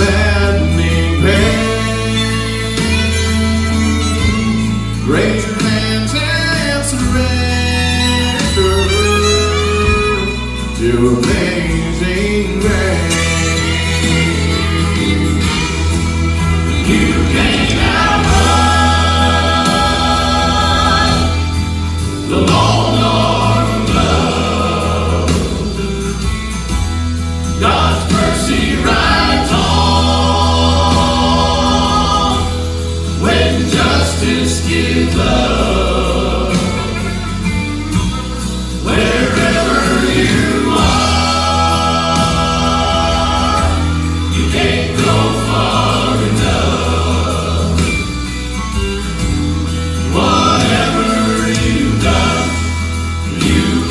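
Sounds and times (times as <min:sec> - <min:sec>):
musical accompaniment with bass: 0:00.0 - 0:53.9
vocal quartet singing gospel: 0:00.0 - 0:53.9.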